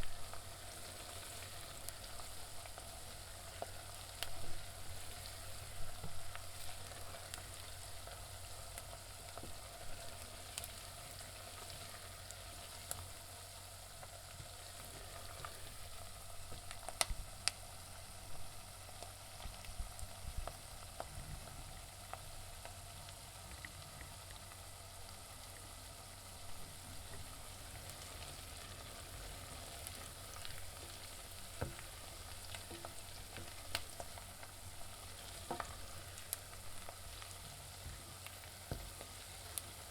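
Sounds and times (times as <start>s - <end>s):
stirring in a pan: 0.0s - 16.8s, 26.6s - 39.9s
crackles and pops: 0.0s - 39.9s
onions sizzling in a pan: 0.0s - 39.9s.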